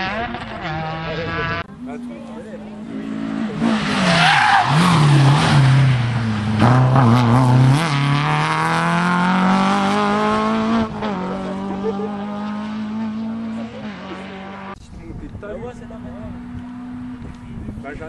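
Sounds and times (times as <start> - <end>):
rally car engine accelerating: 0.0 - 14.8, 15.8 - 17.7
tyres squealing: 3.8 - 5.7.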